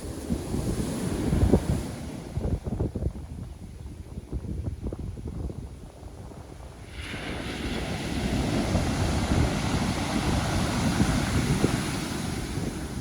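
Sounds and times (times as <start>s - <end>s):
wind rumble on microphone: 0.0s - 13.0s
wave breaking and hissing wash: 6.8s - 13.0s.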